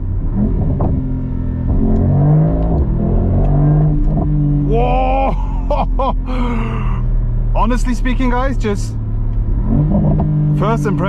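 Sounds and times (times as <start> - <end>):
car engine accelerating through gears: 0.0 - 5.0, 9.0 - 11.0.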